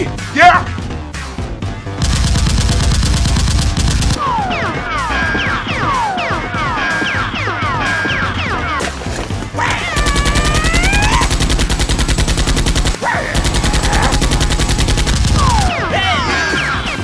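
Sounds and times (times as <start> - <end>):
automatic gunfire bursts: 10.0 - 15.6.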